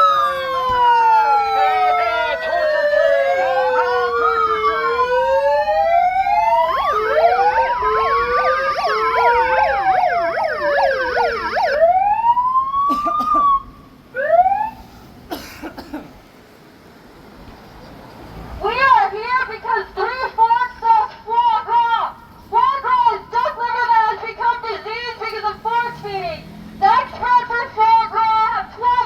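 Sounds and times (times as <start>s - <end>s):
siren yelp: 0.0s - 14.8s
short rising siren whoops: 0.0s - 14.9s
sirens wailing: 0.0s - 15.0s.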